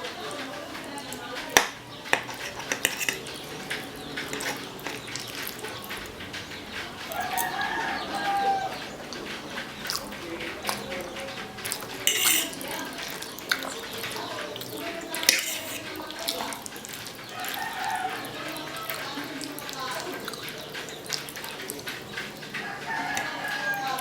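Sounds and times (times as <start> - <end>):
chewing: 0.0 - 24.0
cutlery tapping on plate: 0.2 - 6.0, 7.0 - 9.0, 9.9 - 19.2.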